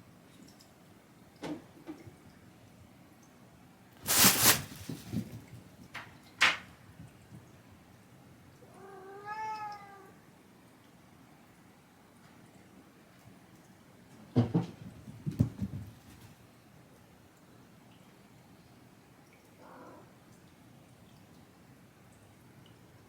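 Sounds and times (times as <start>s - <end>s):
cat meowing: 8.6s - 10.2s.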